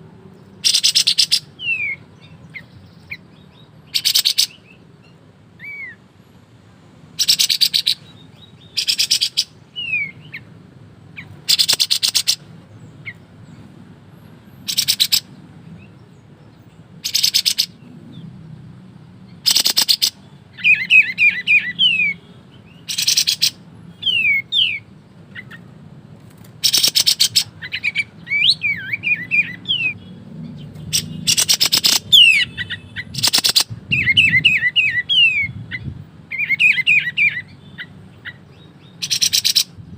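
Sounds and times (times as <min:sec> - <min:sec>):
songbird whistled chirps: 0:19.5 - 0:25.6, 0:26.6 - 0:30.1.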